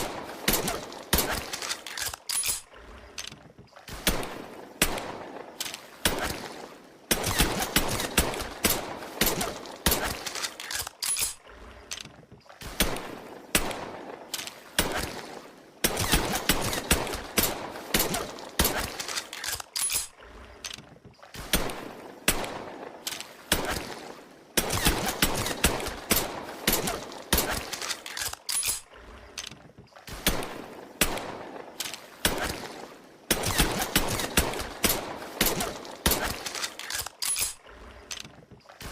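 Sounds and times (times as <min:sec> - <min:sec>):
metallic clicks of pistol action: 0:01.3 - 0:03.4, 0:10.1 - 0:12.1, 0:18.8 - 0:20.8, 0:27.6 - 0:29.6, 0:36.2 - 0:38.3.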